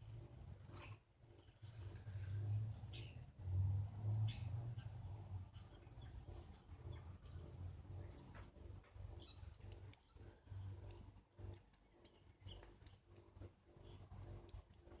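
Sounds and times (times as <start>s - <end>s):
small animal chirping: 4.3s - 13.1s.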